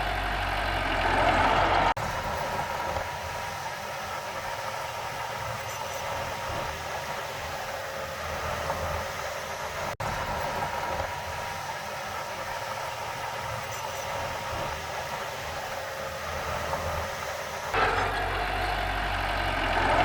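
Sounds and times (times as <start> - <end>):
diesel machinery engine rumble: 0.0 - 20.0
faint steady whine: 2.1 - 17.7.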